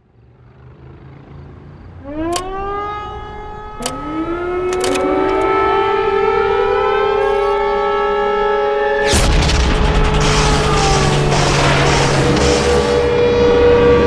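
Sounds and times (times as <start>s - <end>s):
sharp clicks: 2.2s - 9.4s.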